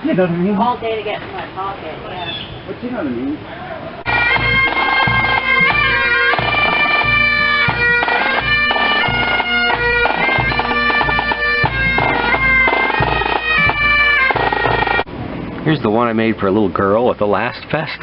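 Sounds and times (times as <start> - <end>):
bagpipes playing: 4.1 - 15.1.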